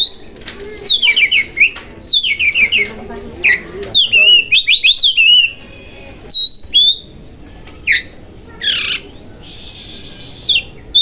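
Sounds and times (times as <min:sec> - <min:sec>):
bird whistling: 0:01.0 - 0:05.6, 0:06.3 - 0:07.1, 0:07.9 - 0:11.0
bird squawk: 0:07.9 - 0:11.0.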